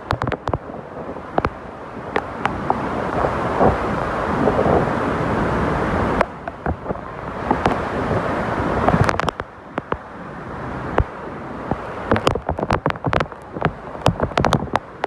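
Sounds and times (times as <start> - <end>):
sharp crackling clicks: 0.0 - 0.7, 1.3 - 2.8, 8.8 - 10.0, 11.7 - 15.0
waterfall roaring: 0.0 - 15.0.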